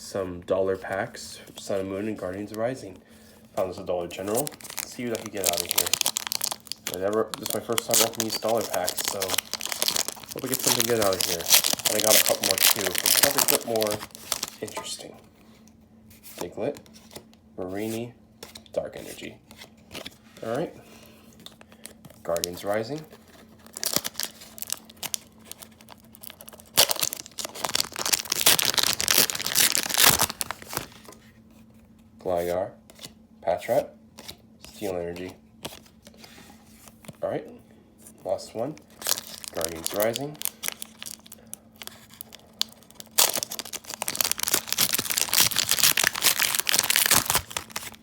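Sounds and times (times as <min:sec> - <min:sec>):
foil wrapper crinkling and tearing: 0:04.1 - 0:14.9, 0:21.5 - 0:31.2, 0:38.7 - 0:48.0.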